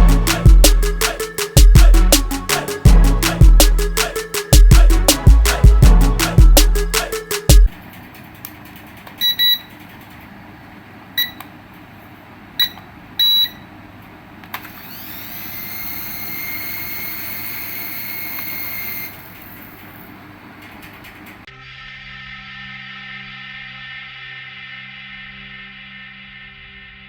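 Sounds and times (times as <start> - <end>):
electronic toy beeps: 12.6 - 13.6
small electric motor whirring: 14.6 - 20.0.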